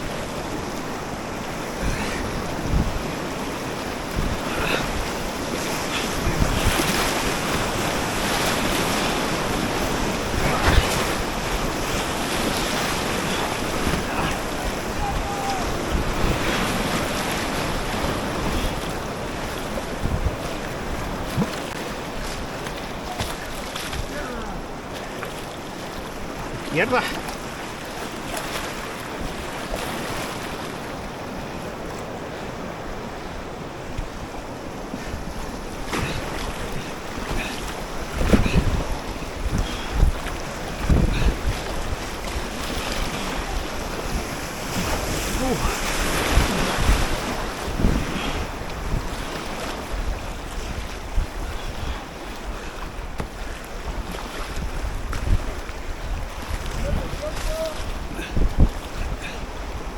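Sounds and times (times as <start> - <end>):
wind buffeting microphone: 0.0 - 28.4, 29.1 - 59.9
river water rushing: 0.0 - 59.9
water splashes: 0.0 - 59.9.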